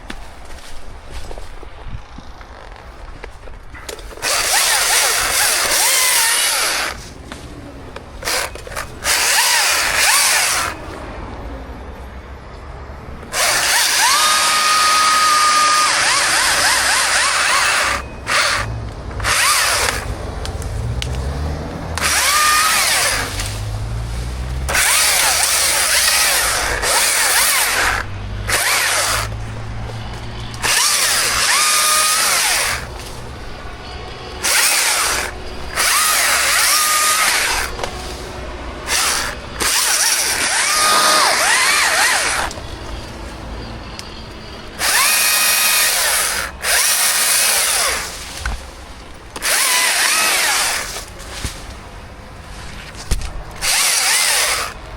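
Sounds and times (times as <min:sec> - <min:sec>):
chainsaw revving: 0:04.0 - 0:07.2, 0:08.2 - 0:10.8, 0:13.3 - 0:20.1, 0:20.7 - 0:33.2, 0:34.4 - 0:38.1, 0:38.8 - 0:42.6, 0:44.8 - 0:48.4, 0:49.3 - 0:51.2, 0:53.6 - 0:54.8.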